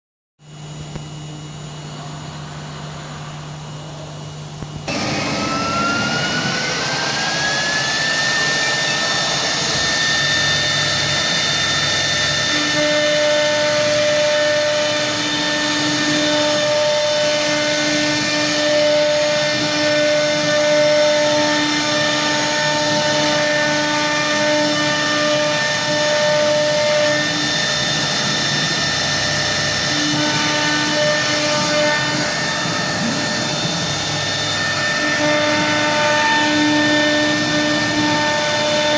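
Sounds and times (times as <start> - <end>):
low steady hum: 0.4 - 14.9
router spindle whine: 0.4 - 38.9
steady machine tones: 0.4 - 38.9.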